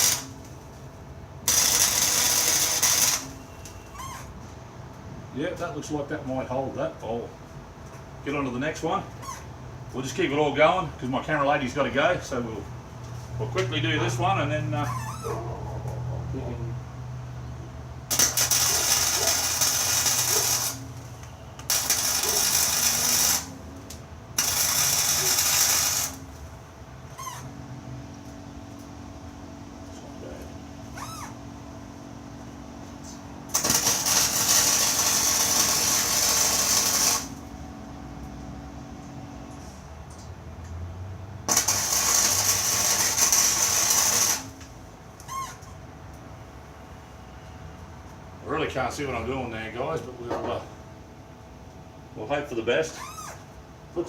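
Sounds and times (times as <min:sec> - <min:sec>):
arc welder crackling: 0:00.0 - 0:04.4, 0:18.0 - 0:27.5, 0:29.8 - 0:38.4, 0:41.4 - 0:46.2.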